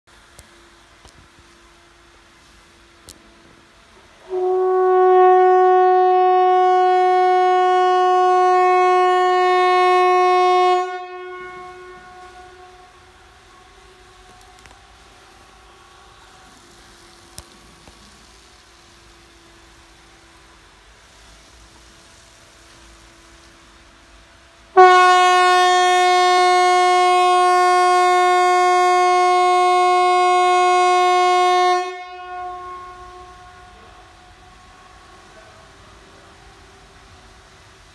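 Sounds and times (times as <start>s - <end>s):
warning siren steady tone: 4.2s - 17.8s, 24.8s - 37.0s.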